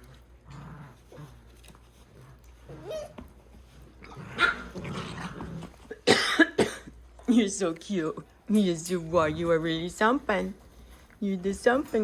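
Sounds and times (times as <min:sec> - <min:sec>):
puppies vocalising: 0:00.2 - 0:06.0
puppies whining: 0:00.9 - 0:06.0.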